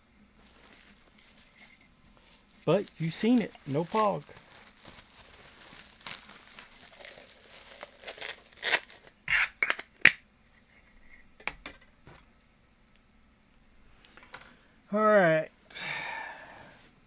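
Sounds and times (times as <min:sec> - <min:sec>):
packing material ripping: 0:00.4 - 0:09.2
packing material rustling: 0:00.4 - 0:09.2.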